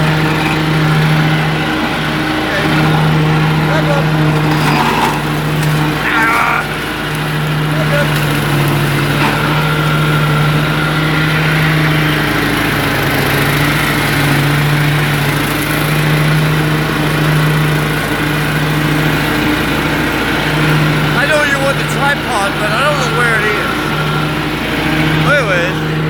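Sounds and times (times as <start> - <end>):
riding lawn mower engine running: 0.0 - 26.0.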